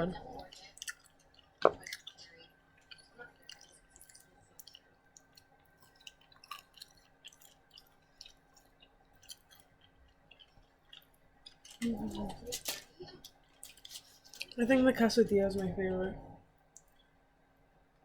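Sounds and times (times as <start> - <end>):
low steady hum: 0.0 - 18.0
person chewing food: 0.2 - 14.6.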